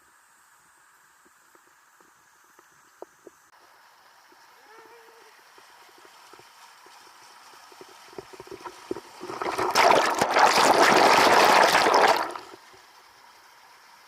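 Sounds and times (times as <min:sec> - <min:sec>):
water splashing: 0:07.2 - 0:12.7
loud rush of water: 0:09.2 - 0:12.6.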